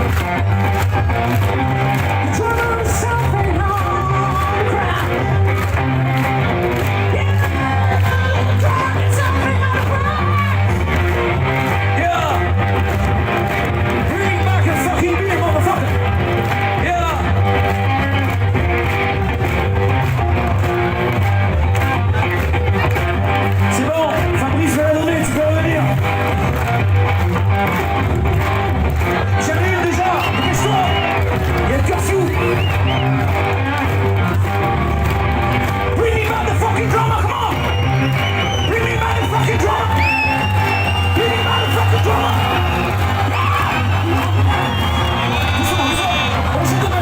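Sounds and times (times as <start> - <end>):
drums: 0.0 - 47.0
electric guitar riff: 0.0 - 47.0
person yelling singing: 2.2 - 11.0, 35.8 - 47.0.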